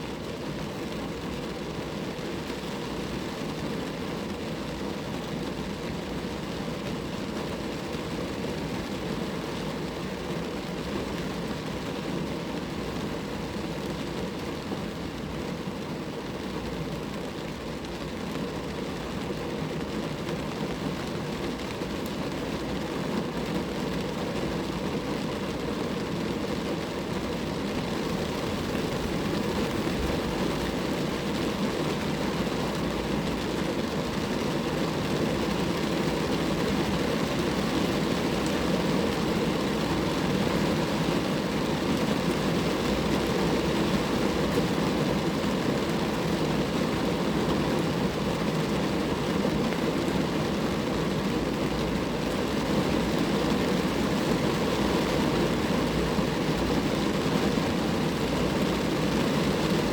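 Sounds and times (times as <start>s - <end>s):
rain falling on a car: 0.0s - 59.9s.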